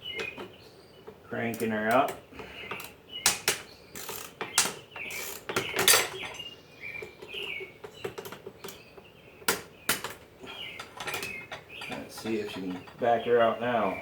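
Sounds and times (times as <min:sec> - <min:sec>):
metal clanks from tools on vise: 0:05.2 - 0:06.5, 0:09.5 - 0:13.1.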